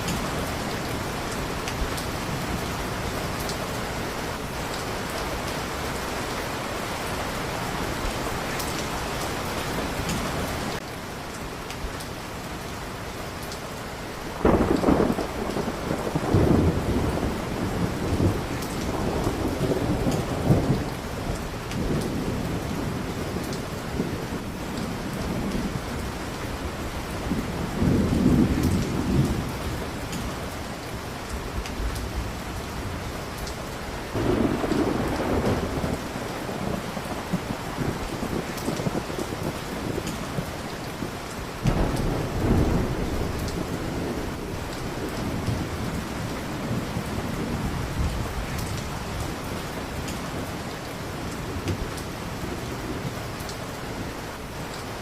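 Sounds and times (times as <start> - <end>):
heavy rain hissing: 0.0 - 55.0
thunder rolling: 14.4 - 26.1, 27.2 - 30.5, 34.1 - 49.3.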